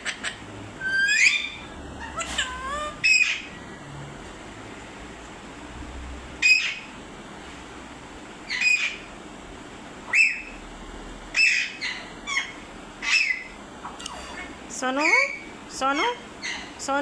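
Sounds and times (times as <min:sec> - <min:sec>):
parrot shrill calls: 0:00.0 - 0:03.6, 0:06.4 - 0:06.9, 0:08.5 - 0:09.1, 0:10.1 - 0:10.5, 0:11.3 - 0:13.5.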